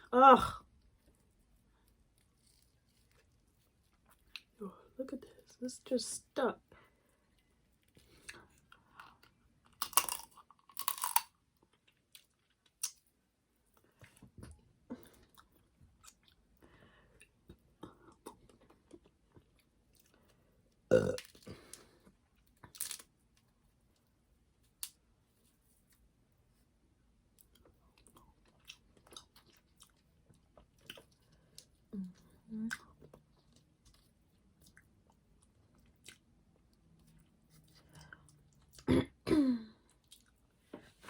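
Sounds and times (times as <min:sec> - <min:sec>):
crab shells cracking: 0:09.8 - 0:11.3, 0:22.7 - 0:23.1
chewing: 0:27.4 - 0:38.9.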